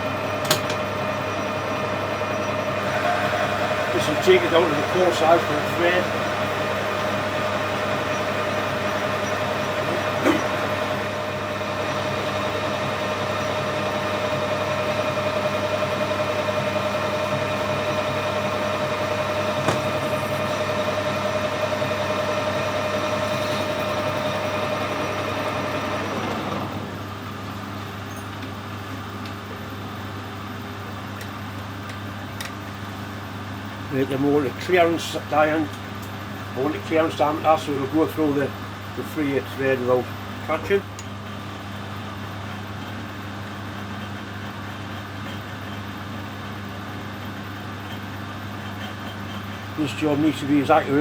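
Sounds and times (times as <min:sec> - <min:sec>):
cutting tool whine: 0:00.0 - 0:27.1
metal lathe running: 0:00.0 - 0:28.1, 0:30.3 - 0:51.0.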